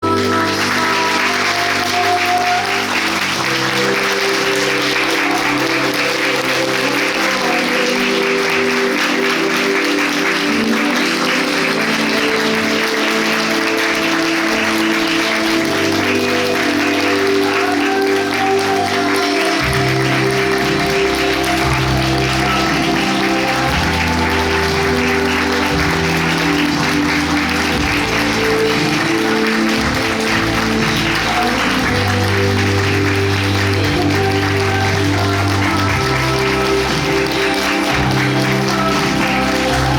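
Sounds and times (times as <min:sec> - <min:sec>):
audience clapping: 0:00.0 - 0:39.9
music: 0:00.0 - 0:39.9
bass part in music: 0:11.7 - 0:39.9.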